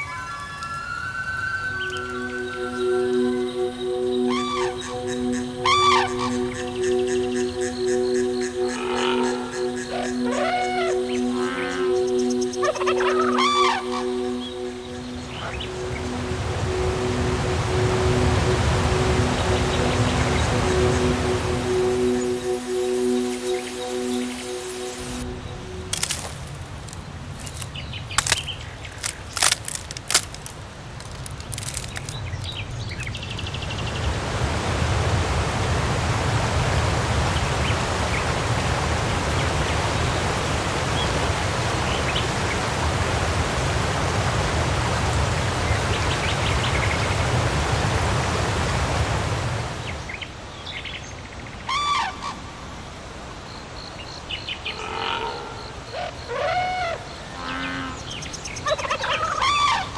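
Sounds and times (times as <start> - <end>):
steady rushing noise: 13.8 - 50.1
bird chirps and clicks: 25.8 - 33.5.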